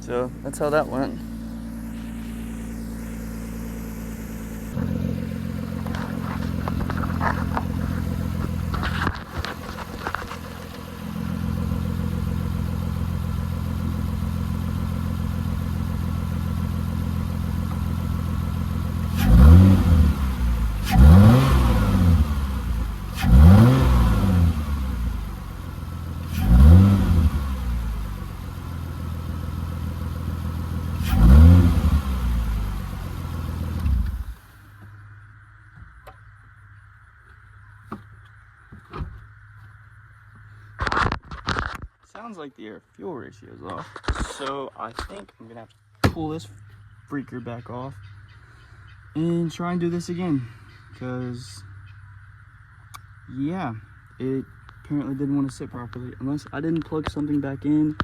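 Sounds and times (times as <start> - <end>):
car engine idling and revving: 0.0 - 41.8, 43.8 - 58.0.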